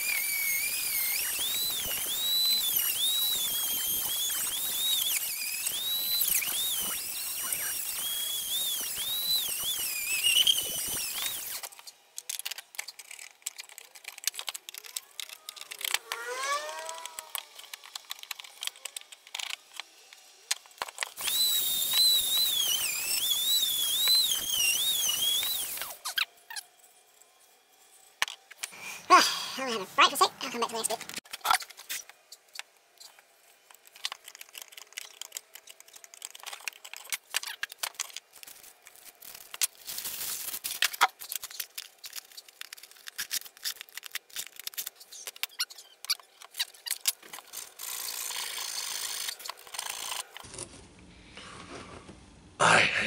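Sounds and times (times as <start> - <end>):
wood lathe tool squealing: 0.0 - 11.7, 21.2 - 26.0
scratchy wood cutting: 0.0 - 11.8, 12.7 - 19.7, 20.9 - 26.6.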